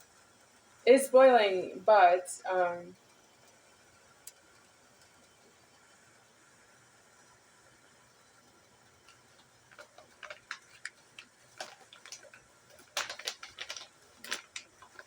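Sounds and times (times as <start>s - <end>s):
light clicks and taps: 9.0s - 15.0s.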